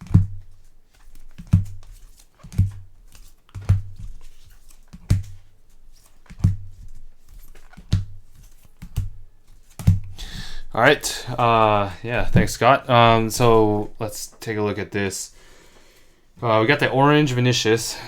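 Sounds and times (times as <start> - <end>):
sleeved cards tapped on table: 0.0 - 10.2.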